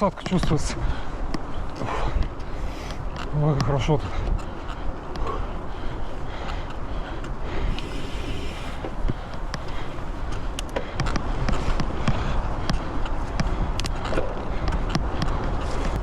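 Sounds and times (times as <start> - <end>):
bike rattling over bumps: 0.0 - 16.0
tyres rushing on dirt trail: 0.0 - 16.0
wind on microphone: 0.0 - 16.0.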